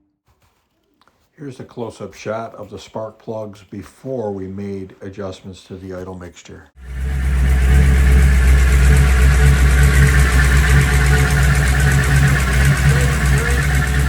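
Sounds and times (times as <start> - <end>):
car engine idling: 6.8 - 14.0.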